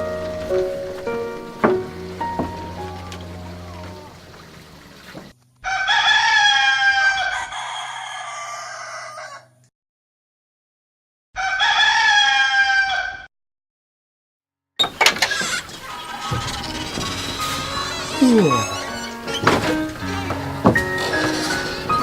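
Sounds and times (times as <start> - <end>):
rooster crowing: 5.6 - 9.6, 11.4 - 13.2.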